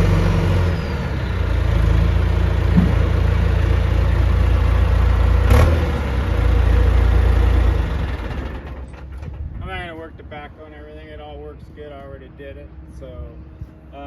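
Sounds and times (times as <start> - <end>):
diesel engine running hard: 0.0 - 9.6.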